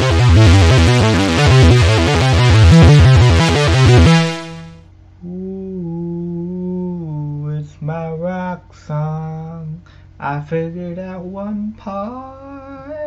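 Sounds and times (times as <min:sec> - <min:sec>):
pulsing bass line: 0:00.0 - 0:04.8
synthesizer rock riff: 0:00.0 - 0:04.8
man humming: 0:05.2 - 0:07.5.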